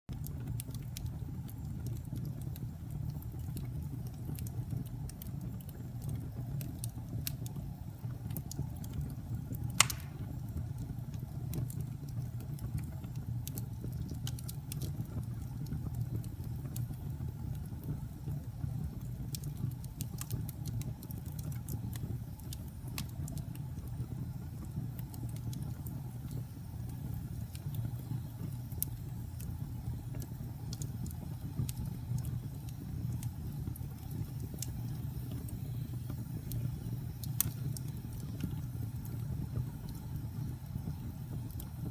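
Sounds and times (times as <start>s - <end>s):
low fire rumble: 0.1s - 41.9s
wood fire crackling: 0.1s - 41.9s
sharp loud pop from fire: 9.8s - 10.5s.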